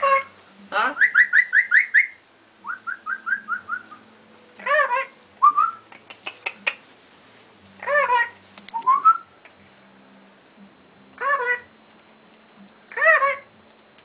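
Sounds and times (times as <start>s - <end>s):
parrot call: 0.0s - 0.3s, 1.0s - 3.9s, 4.6s - 6.8s, 7.8s - 9.2s, 11.2s - 11.7s, 12.9s - 13.5s
parrot whistling: 0.9s - 4.0s, 4.6s - 5.8s, 7.8s - 9.3s.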